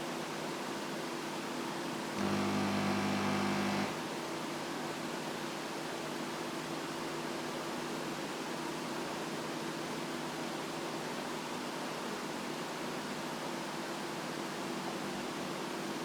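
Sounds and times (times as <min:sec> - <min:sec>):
pump buzzing hum: 0:02.2 - 0:04.0.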